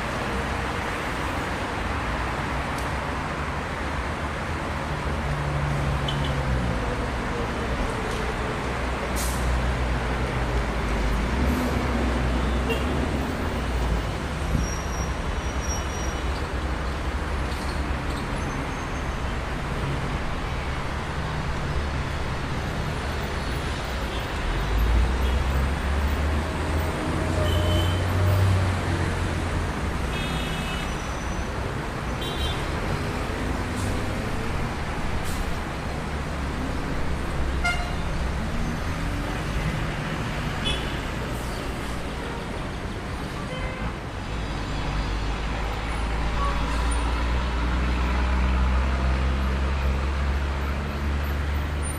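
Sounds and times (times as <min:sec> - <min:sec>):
car horn toots: 0:37.6 - 0:38.0.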